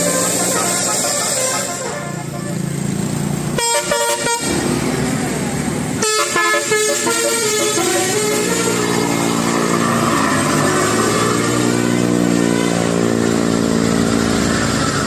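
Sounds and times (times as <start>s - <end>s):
bus horn melody: 0.0s - 2.8s, 3.5s - 4.8s, 5.9s - 9.8s, 10.4s - 13.4s
bus diesel engine revving: 0.0s - 15.0s.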